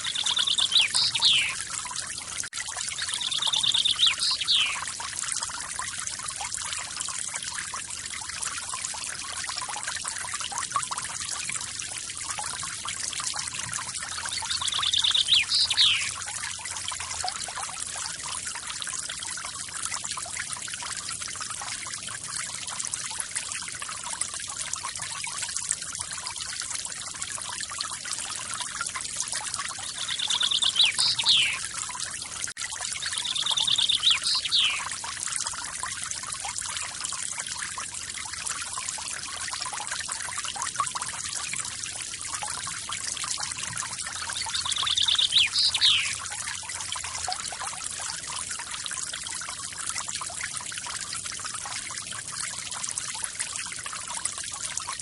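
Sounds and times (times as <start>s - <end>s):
bird calling: 0.0s - 1.6s, 3.1s - 4.8s, 14.4s - 16.2s, 29.9s - 31.6s, 33.1s - 34.9s, 44.4s - 46.2s.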